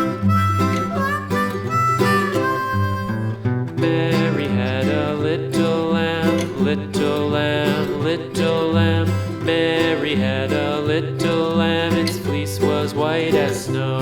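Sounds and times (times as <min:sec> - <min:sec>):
harmonica: 0:00.0 - 0:07.2
acoustic guitar: 0:00.0 - 0:14.0.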